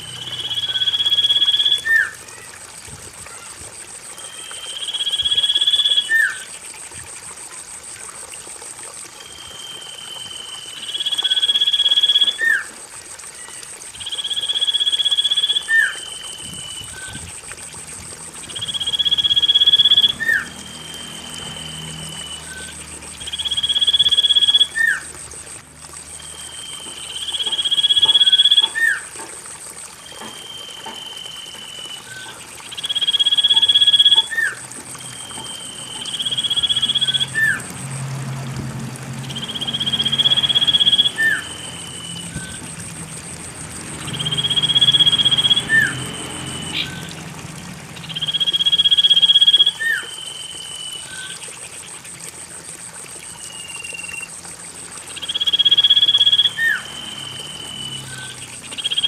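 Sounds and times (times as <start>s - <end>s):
bird whistling song: 0.0s - 2.2s, 4.2s - 6.4s, 9.2s - 12.7s, 13.3s - 17.2s, 18.5s - 25.0s, 26.2s - 29.0s, 30.0s - 37.6s, 39.2s - 42.6s, 44.1s - 47.2s, 48.0s - 51.4s, 53.3s - 54.3s, 55.2s - 59.0s.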